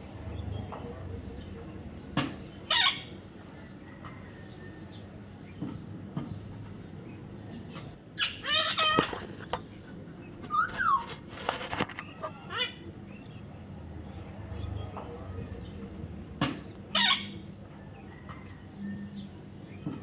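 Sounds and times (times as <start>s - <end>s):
parrot calls and squawks: 2.6s - 3.2s, 8.1s - 9.4s, 10.5s - 12.9s, 16.9s - 17.5s.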